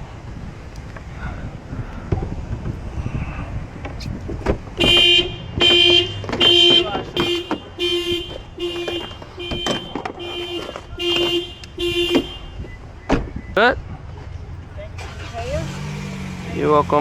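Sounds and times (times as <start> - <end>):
car alarm horn honking: 4.8 - 13.7.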